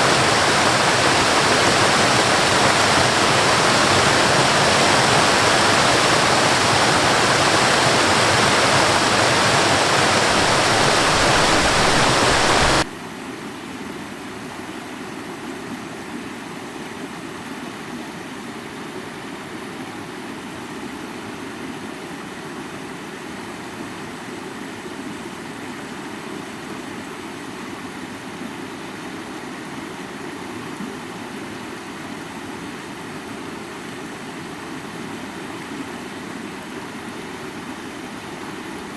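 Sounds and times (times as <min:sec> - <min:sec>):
waterfall rushing: 0:00.0 - 0:12.9.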